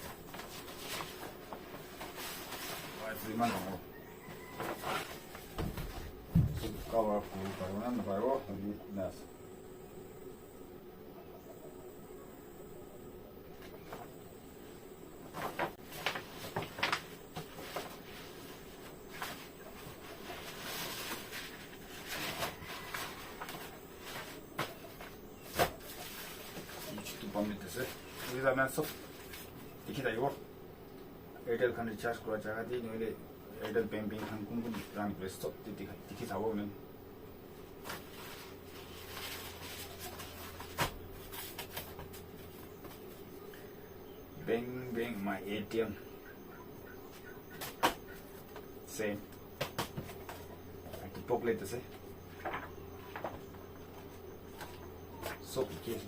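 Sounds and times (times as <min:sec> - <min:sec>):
rustling of items being handled: 0:00.0 - 0:09.1, 0:13.5 - 0:30.5, 0:33.5 - 0:36.6, 0:37.4 - 0:46.0, 0:46.8 - 0:56.0.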